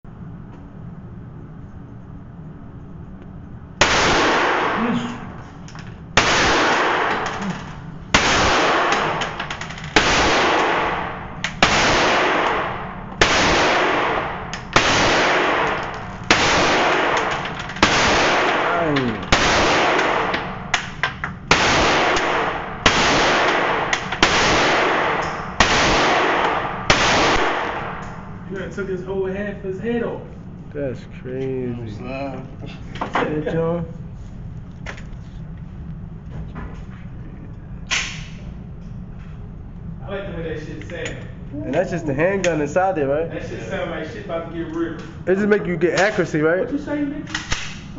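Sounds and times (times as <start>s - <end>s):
gunshots echoing: 3.8s - 5.4s, 6.2s - 28.4s.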